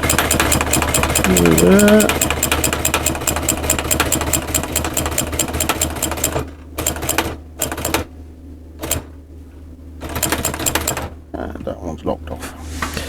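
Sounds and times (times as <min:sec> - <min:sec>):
sewing machine stitching: 0:00.0 - 0:08.1, 0:08.8 - 0:09.1, 0:10.0 - 0:11.1.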